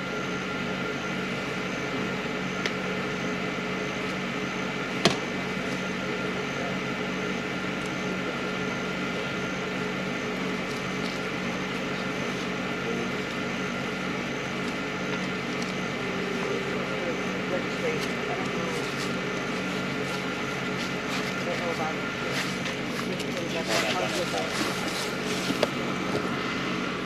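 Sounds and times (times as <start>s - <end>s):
steady mechanical hum: 0.0s - 27.0s.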